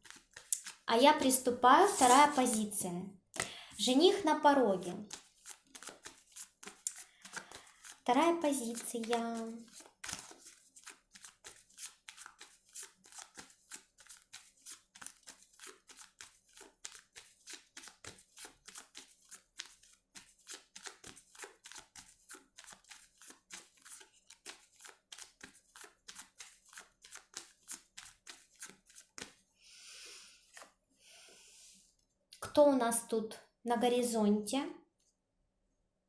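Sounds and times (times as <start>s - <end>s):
cards shuffling: 0.0s - 0.8s, 1.8s - 2.7s, 5.1s - 8.0s, 8.6s - 29.4s.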